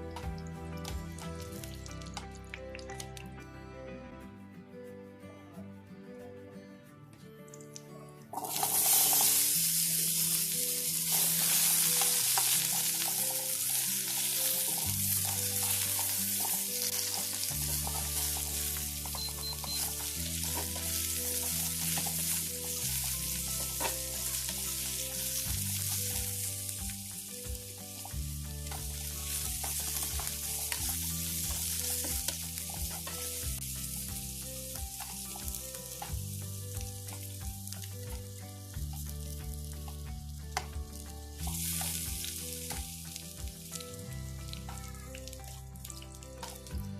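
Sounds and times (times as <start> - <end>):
food frying in hot oil: 8.4 - 39.6, 40.9 - 44.7.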